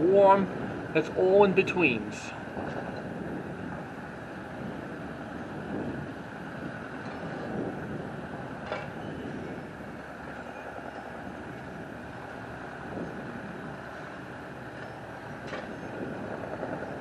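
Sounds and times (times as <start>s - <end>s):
heavy construction machinery running: 0.0s - 17.0s.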